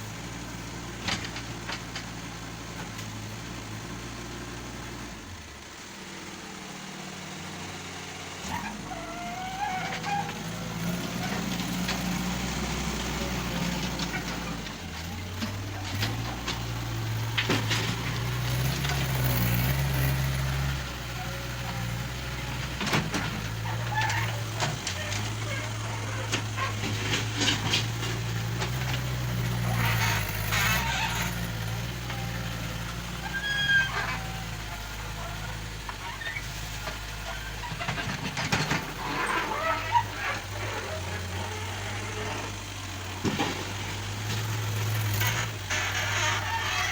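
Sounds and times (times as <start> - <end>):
diesel engine running: 0.0 - 46.9
wavering squeal: 33.2 - 34.4.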